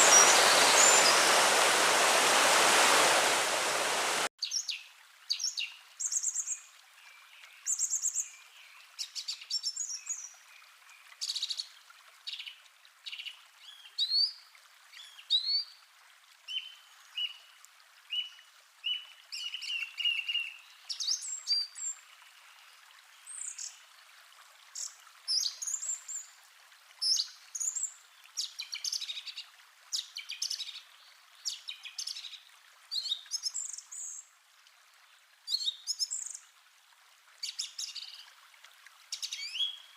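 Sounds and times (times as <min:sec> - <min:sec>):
faint steady hiss: 0:00.0 - 0:04.3.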